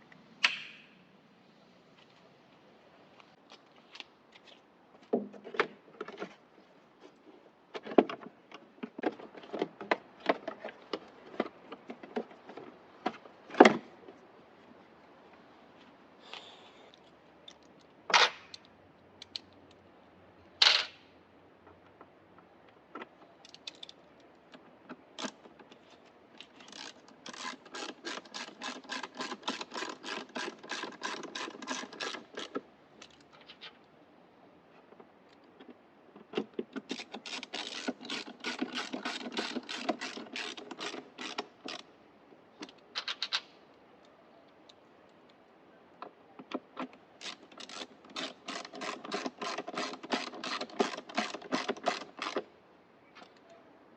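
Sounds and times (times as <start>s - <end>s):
rapid mechanical clicking: 26.4s - 32.6s, 36.8s - 41.8s, 47.2s - 52.5s.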